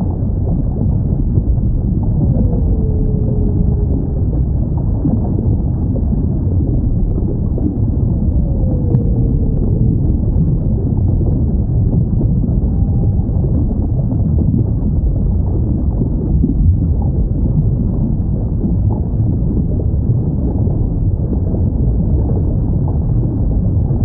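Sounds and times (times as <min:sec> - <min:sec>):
underwater ocean rumble: 0:00.0 - 0:24.0
whale calls: 0:01.4 - 0:14.8.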